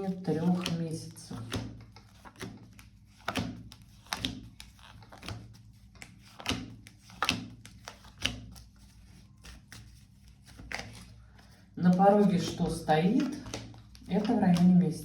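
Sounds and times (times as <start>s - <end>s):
cards shuffling snaps and slaps: 0.4s - 11.2s, 12.2s - 14.8s.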